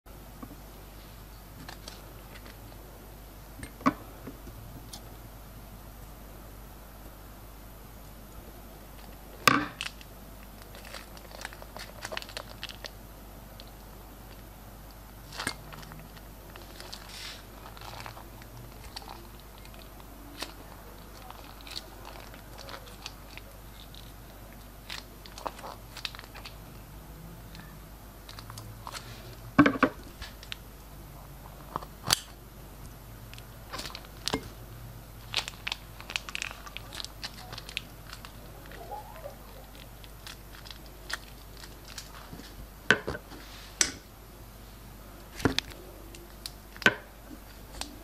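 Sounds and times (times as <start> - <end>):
plastic crinkling: 9.0 - 14.5, 15.2 - 26.8, 27.4 - 30.6, 33.3 - 34.6, 35.2 - 42.6
sharp crackle: 35.2 - 42.5.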